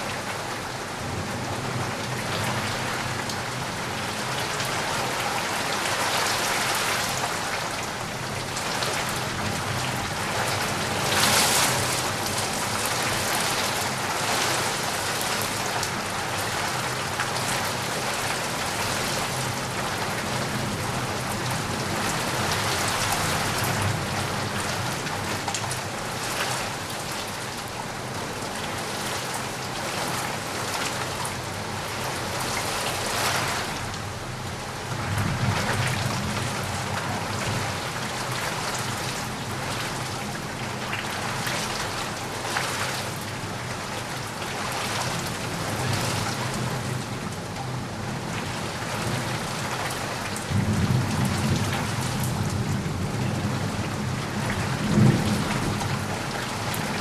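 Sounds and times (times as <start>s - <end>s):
heavy rain pattering: 0.0s - 57.0s
thunder rumbles: 50.5s - 57.0s.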